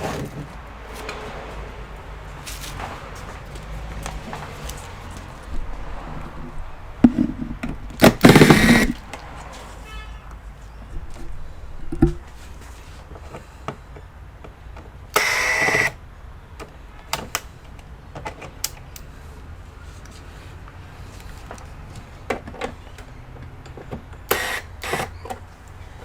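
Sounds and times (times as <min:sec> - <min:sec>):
electric screwdriver whirring: 0:08.0 - 0:09.0, 0:15.2 - 0:16.0, 0:24.3 - 0:25.2.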